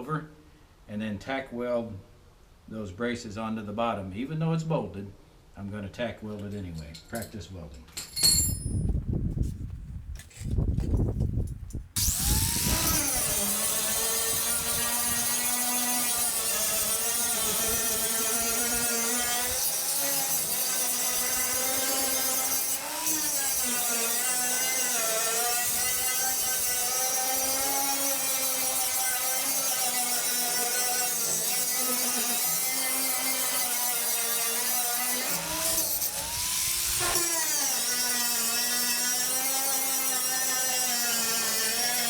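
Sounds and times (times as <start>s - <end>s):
power tool motor on metal: 12.0s - 42.0s.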